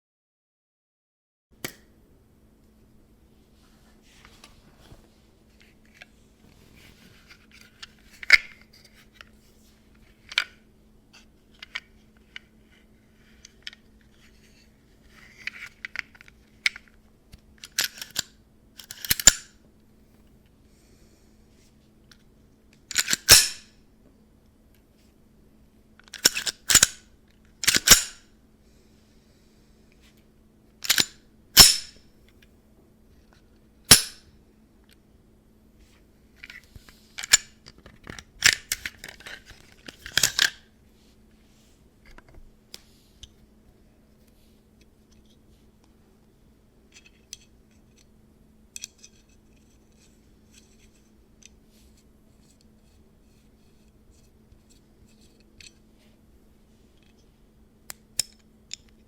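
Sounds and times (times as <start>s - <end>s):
plastic parts rattling: 37.2s - 40.6s.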